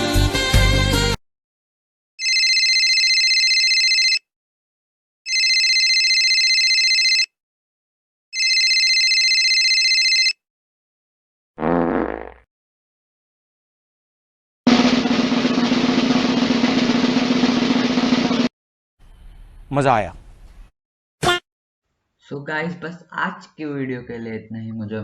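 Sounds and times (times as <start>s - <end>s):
electronic telephone ring: 2.2s - 4.2s, 5.3s - 7.3s, 8.4s - 10.4s
fart sound effect: 11.6s - 12.5s.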